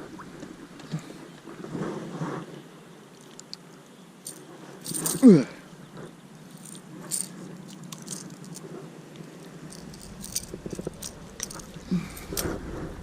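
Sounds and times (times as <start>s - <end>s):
fishing tackle clicks and rattles: 4.2s - 5.3s, 6.5s - 8.6s, 9.6s - 12.6s.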